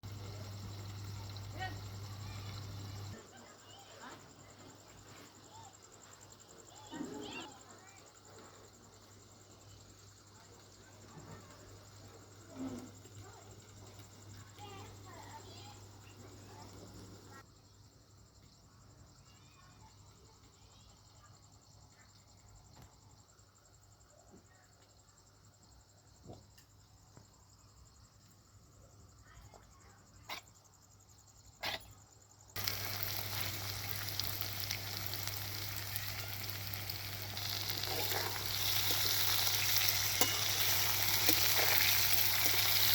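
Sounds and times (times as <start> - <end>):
steady hiss: 0.0 - 17.4, 32.5 - 42.9.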